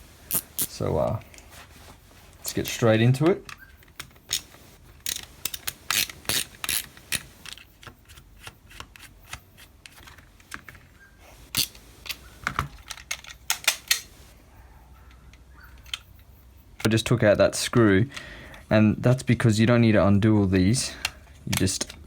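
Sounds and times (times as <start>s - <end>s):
ratchet screwdriver clicking: 3.5s - 9.4s.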